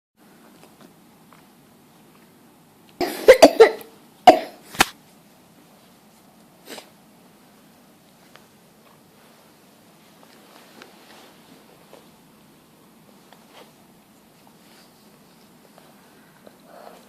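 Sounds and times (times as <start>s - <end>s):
person coughing: 3.0s - 4.6s.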